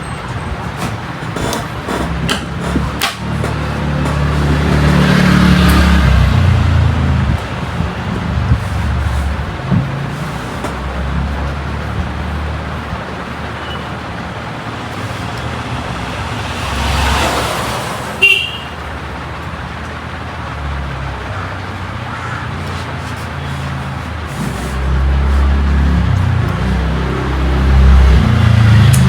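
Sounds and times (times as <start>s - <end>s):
road traffic passing: 0.0s - 29.0s
vehicle passing close: 0.0s - 29.0s
short horn toot: 18.2s - 18.8s.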